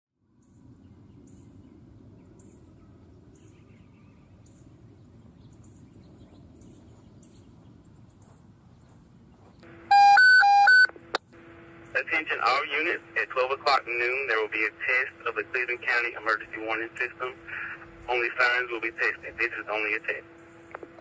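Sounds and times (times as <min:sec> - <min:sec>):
low rumble of background noise: 0:00.2 - 0:21.0.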